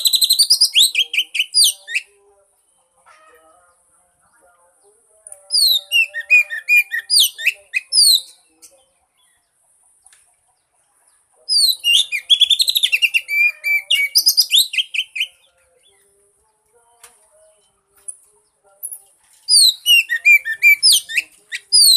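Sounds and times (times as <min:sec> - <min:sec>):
bird singing whistled notes: 0:00.0 - 0:02.1, 0:05.5 - 0:08.5, 0:11.5 - 0:16.0, 0:18.9 - 0:21.9.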